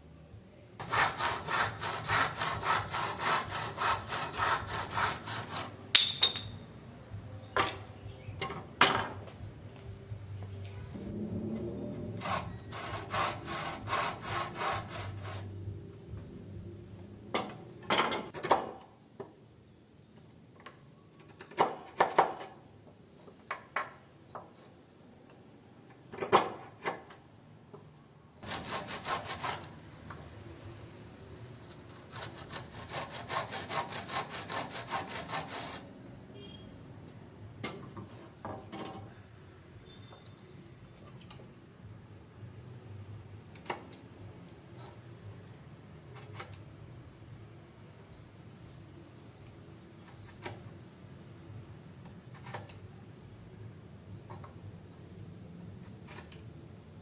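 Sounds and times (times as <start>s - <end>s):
hand saw cutting wood: 0.8s - 5.8s, 12.0s - 15.6s, 28.4s - 29.8s, 31.8s - 35.9s.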